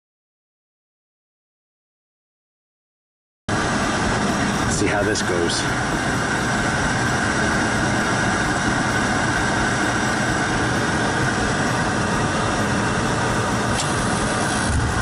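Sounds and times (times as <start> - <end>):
gas heating unit whirring: 3.5 - 15.0.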